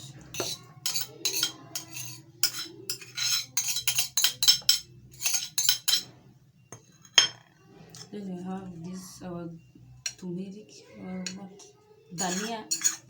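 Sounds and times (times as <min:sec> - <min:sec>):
dishes and utensils clattering: 0:00.0 - 0:08.2, 0:11.2 - 0:13.0.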